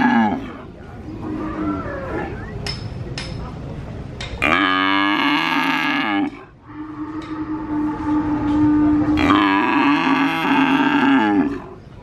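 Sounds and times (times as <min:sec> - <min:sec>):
faint background murmur: 0:00.0 - 0:12.0
calf mooing: 0:04.4 - 0:11.6.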